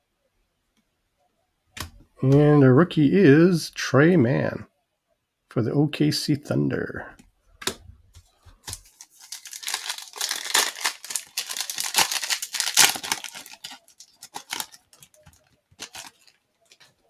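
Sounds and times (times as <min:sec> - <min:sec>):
foil wrapper tearing and crinkling: 0:08.6 - 0:17.0.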